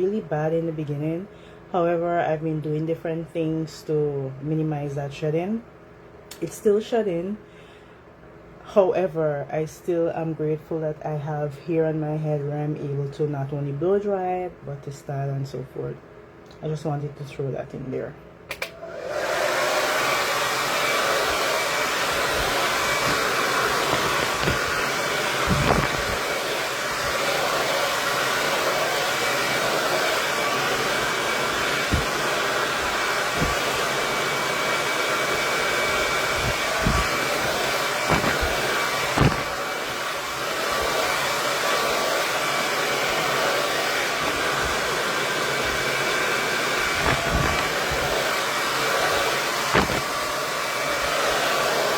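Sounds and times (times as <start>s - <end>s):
hair dryer running: 18.5s - 51.9s
soft bumps: 22.4s - 24.8s, 25.4s - 26.2s, 31.5s - 33.9s, 35.9s - 39.6s.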